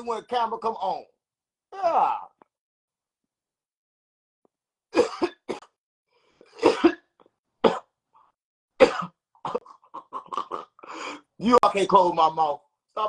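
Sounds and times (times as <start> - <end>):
man coughing: 5.0 - 5.7, 6.5 - 7.9, 8.8 - 10.8.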